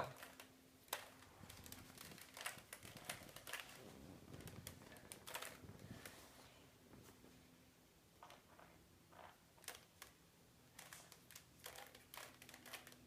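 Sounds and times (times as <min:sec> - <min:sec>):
puzzle cube plastic clicks: 0:00.1 - 0:03.8, 0:04.4 - 0:05.6, 0:10.8 - 0:13.0.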